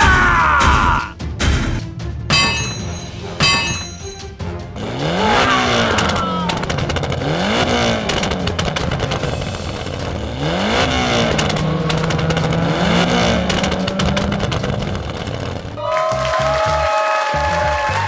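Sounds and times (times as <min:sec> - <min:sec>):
engine revving: 0:04.5 - 0:15.8.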